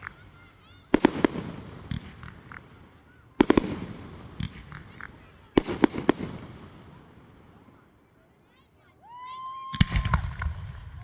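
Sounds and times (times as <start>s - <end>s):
faint firework pops: 0.0s - 7.1s, 9.8s - 11.0s
fireworks shells bursting: 0.0s - 7.8s.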